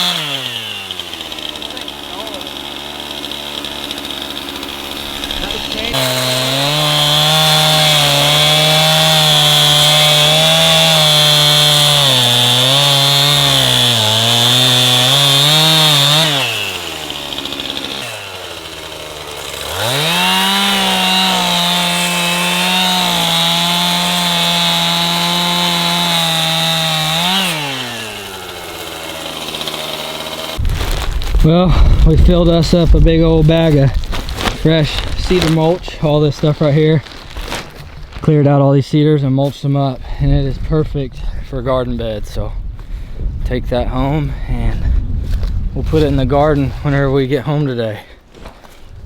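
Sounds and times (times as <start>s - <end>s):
chainsaw cutting wood: 0.0s - 38.6s.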